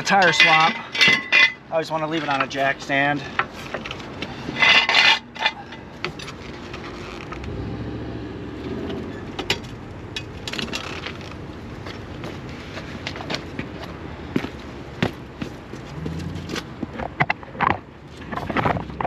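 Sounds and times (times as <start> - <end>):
metal scrape and clank: 0.0 - 2.5, 3.3 - 6.9.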